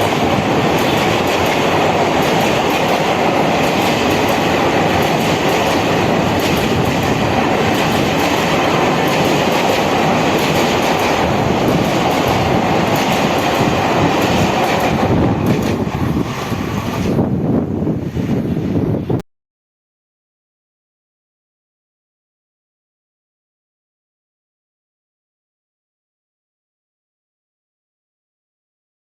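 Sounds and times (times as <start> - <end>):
train wheels clattering: 0.0 - 17.2.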